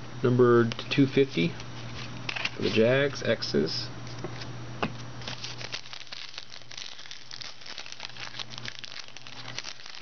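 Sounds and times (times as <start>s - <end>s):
cards crinkling and clicking: 5.2s - 10.0s.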